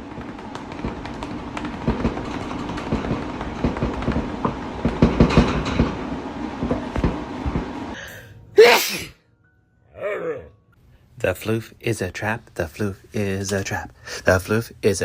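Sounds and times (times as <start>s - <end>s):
clacks and knocks: 0.1s - 7.8s.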